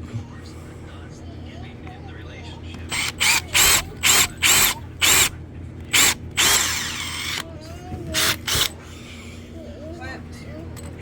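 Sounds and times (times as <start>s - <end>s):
cordless drill bursts: 2.9s - 5.3s, 5.9s - 7.4s, 8.2s - 8.7s.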